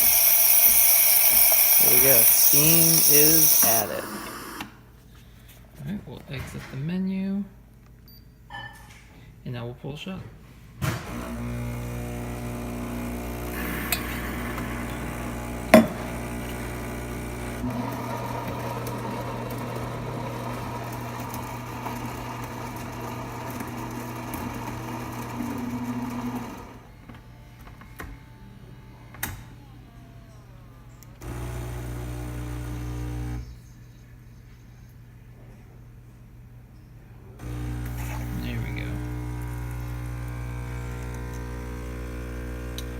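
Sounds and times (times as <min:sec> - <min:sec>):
espresso machine humming: 0:00.0 - 0:04.8, 0:11.1 - 0:26.9, 0:31.2 - 0:33.6, 0:37.4 - 0:42.9.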